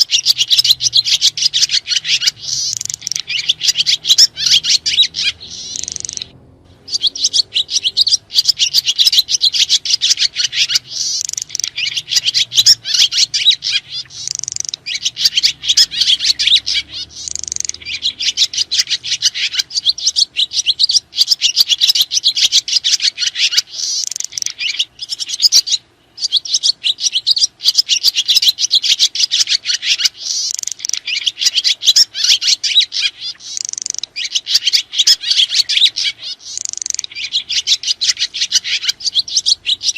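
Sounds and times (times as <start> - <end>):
swiftlets twittering: 0.0 - 22.5.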